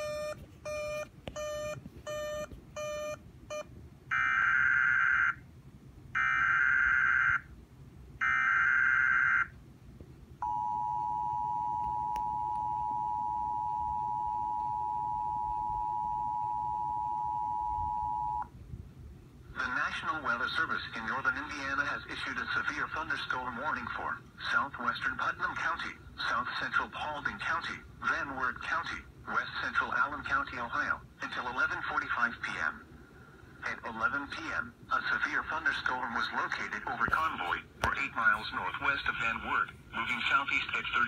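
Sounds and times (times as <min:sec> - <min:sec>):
short beeps: 0:00.0 - 0:03.7, 0:10.4 - 0:18.5
two-tone attention signal: 0:00.0 - 0:03.7.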